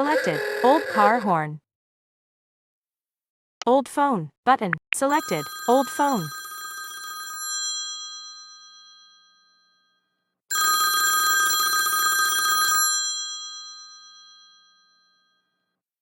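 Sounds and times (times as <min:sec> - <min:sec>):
old telephone bell ringing: 0:05.1 - 0:09.8, 0:10.5 - 0:15.4.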